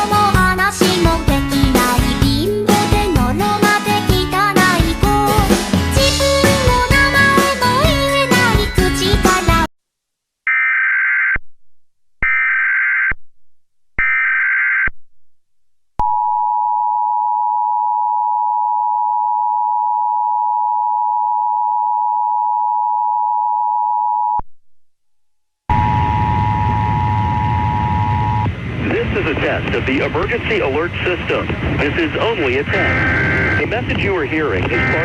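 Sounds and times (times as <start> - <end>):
two-tone attention signal: 25.7 - 28.5, 32.8 - 33.7, 34.7 - 35.0
screechy data bursts: 32.7 - 33.7.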